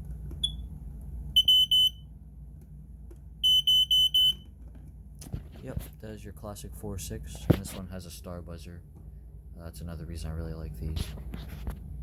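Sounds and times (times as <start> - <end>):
smoke alarm beeping: 0.4 - 0.7, 1.4 - 2.1, 3.4 - 4.5.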